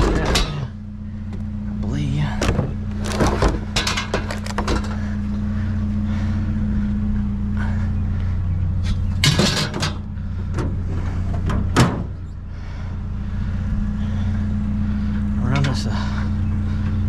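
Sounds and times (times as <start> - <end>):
truck engine idling: 0.0 - 17.0
sharp knocks and clunks: 2.4 - 5.0, 9.2 - 12.2.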